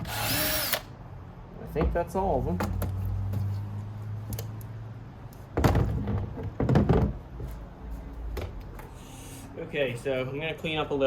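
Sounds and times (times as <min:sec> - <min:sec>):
powered screwdriver motor hum: 0:00.0 - 0:00.9.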